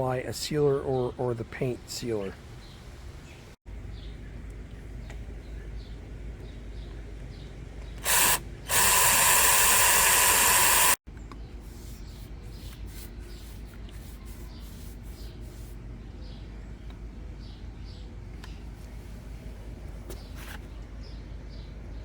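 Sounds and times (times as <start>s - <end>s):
aerosol can spraying: 8.0s - 11.0s.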